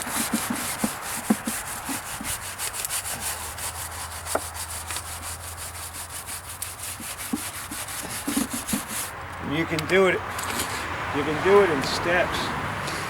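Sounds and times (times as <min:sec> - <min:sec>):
stiff brush scrubbing wood: 0:00.0 - 0:09.2.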